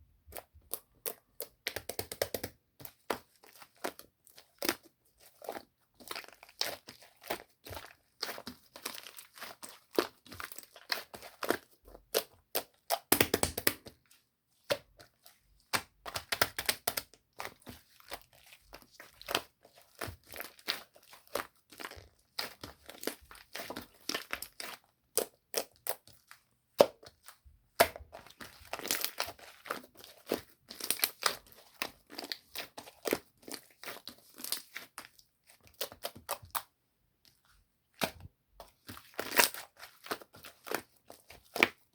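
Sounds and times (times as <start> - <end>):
slime crackling and popping: 7.6 - 14.0, 15.7 - 18.4, 27.8 - 36.7.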